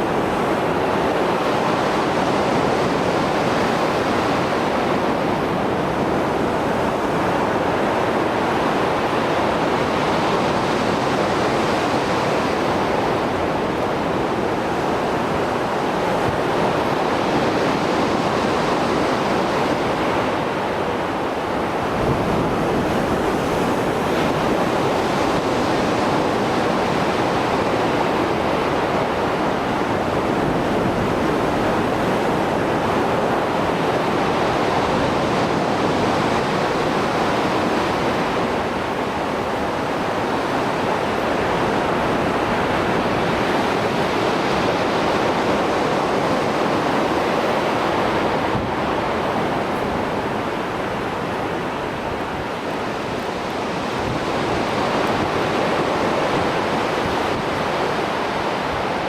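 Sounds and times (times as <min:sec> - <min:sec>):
waves breaking: 0:00.0 - 0:59.0.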